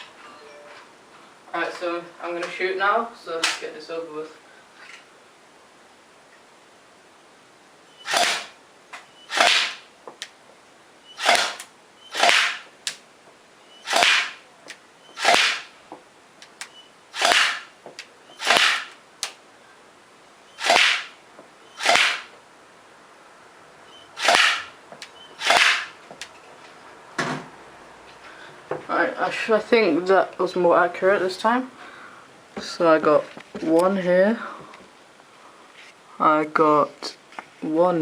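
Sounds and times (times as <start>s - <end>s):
airsoft pistol shots: 8.1s - 8.6s, 9.3s - 9.9s, 11.2s - 12.7s, 13.9s - 14.4s, 15.2s - 15.7s, 17.2s - 17.7s, 18.4s - 19.0s, 20.6s - 21.2s, 21.8s - 22.3s, 24.2s - 24.7s, 25.4s - 26.0s
faint sharp clicks: 16.4s - 16.8s.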